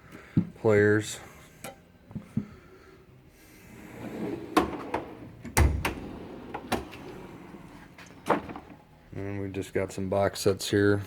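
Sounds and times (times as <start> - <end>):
drawer rolling on slides: 3.7 - 8.8
drawer shutting with deep thump: 4.5 - 7.1.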